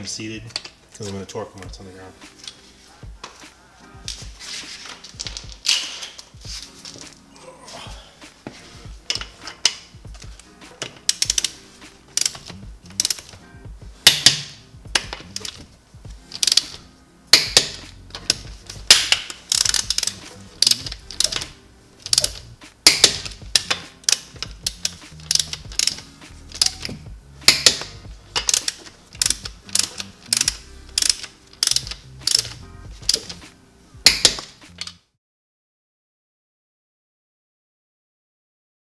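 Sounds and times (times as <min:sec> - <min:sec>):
hand ratchet clicking: 0:09.0 - 0:13.4, 0:14.0 - 0:15.7, 0:16.3 - 0:33.4, 0:34.0 - 0:35.0.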